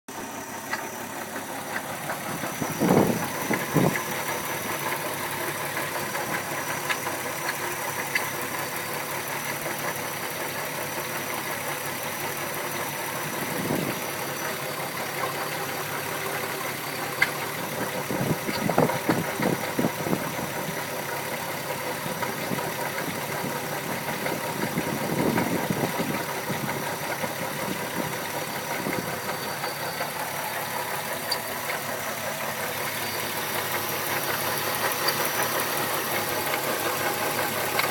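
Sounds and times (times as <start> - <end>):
car engine idling: 0.1 - 37.9
engine knocking: 0.1 - 37.9.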